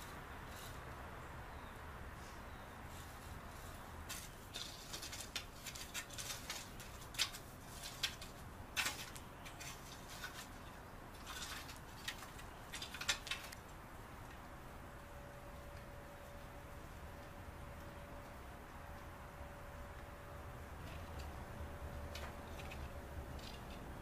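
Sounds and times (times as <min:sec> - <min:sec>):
rake scraping through soil: 0:00.0 - 0:00.9, 0:02.9 - 0:13.6.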